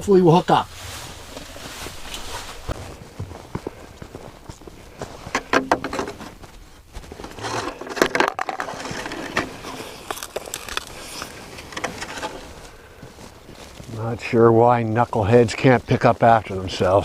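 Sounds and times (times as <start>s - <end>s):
shovel scraping ice: 7.2s - 12.4s.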